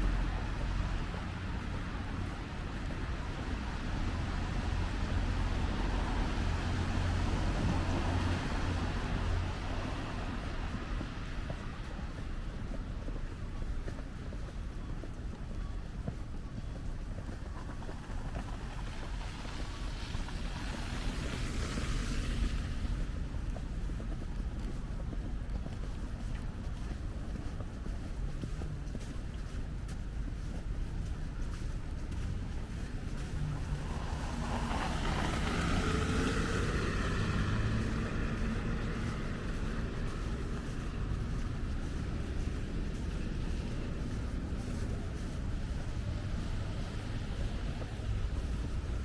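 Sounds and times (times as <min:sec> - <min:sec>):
vehicle tyres hissing on slush: 0:00.0 - 0:12.7, 0:17.3 - 0:23.8, 0:30.8 - 0:49.0
low rumble of traffic: 0:00.0 - 0:49.0.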